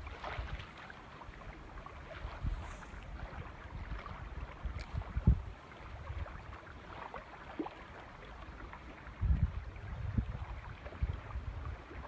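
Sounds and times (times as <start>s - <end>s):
wind buffeting microphone: 2.0s - 7.1s, 9.0s - 12.0s.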